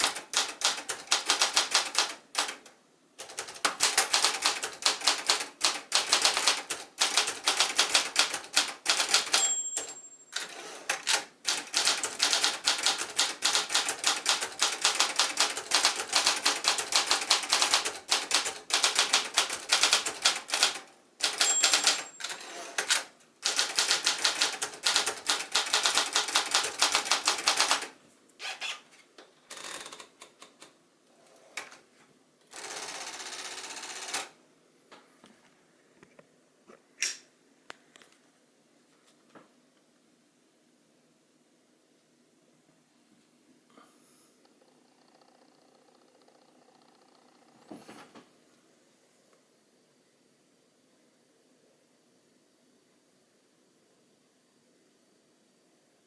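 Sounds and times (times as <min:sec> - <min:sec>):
typewriter margin bell: 0:06.0 - 0:22.6.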